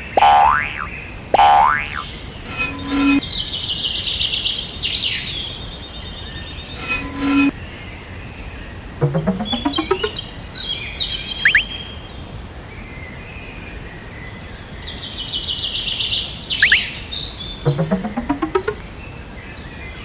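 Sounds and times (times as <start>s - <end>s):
rising run of rapid pulses: 17.7s - 18.8s.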